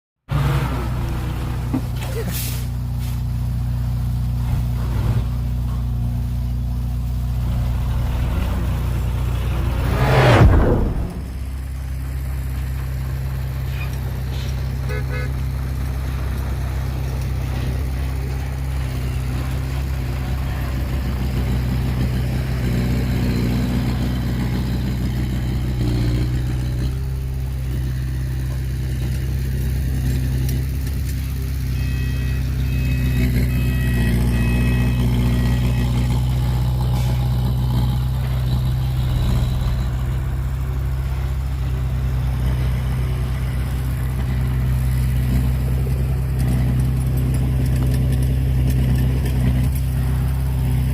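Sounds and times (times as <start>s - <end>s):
heavy diesel engine droning: 0.2s - 50.9s
short high-pitched squeaks: 13.7s - 15.0s.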